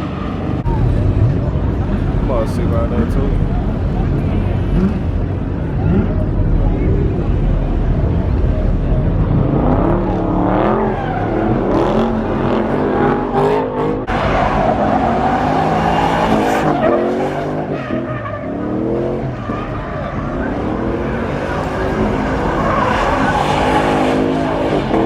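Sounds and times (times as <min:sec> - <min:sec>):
car engine revving: 0:00.0 - 0:25.0
tires squealing on pavement: 0:09.5 - 0:25.0.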